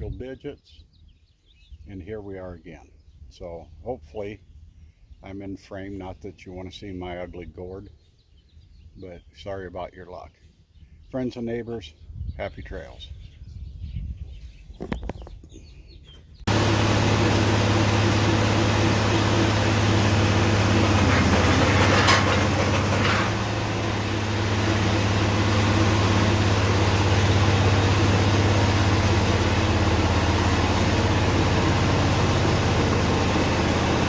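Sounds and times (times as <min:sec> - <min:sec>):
faint birds: 0:00.0 - 0:16.9
engine drone: 0:16.5 - 0:34.0.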